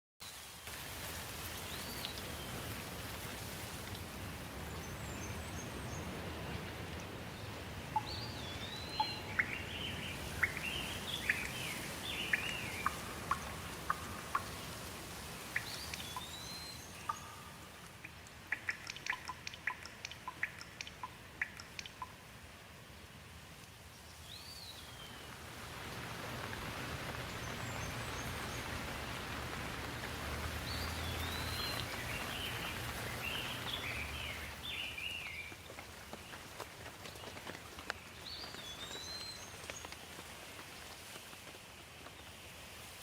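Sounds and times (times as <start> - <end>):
rain hiss: 0.2 - 43.0
birds chirping and whistling: 15.6 - 17.5.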